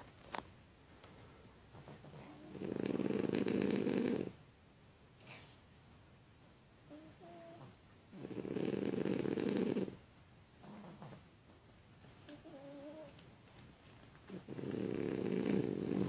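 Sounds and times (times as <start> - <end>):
dogs snoring: 1.8 - 4.4, 6.9 - 10.0, 12.3 - 13.1, 14.3 - 16.0.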